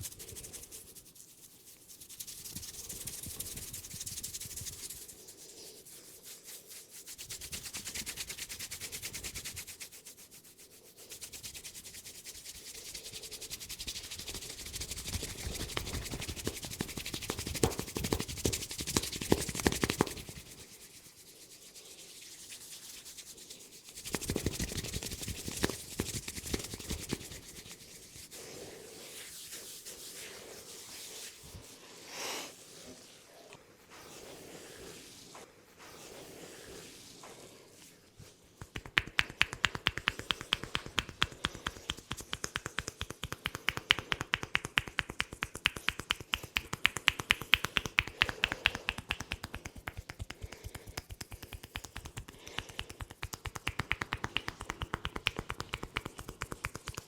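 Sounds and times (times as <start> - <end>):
hands rubbing through hair: 0.0 - 57.0.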